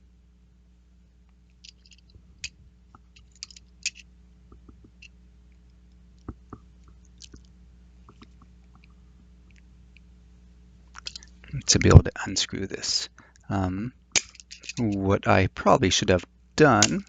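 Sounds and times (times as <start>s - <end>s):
tools clicking and scraping: 3.2s - 4.0s, 11.0s - 11.2s, 14.2s - 14.9s.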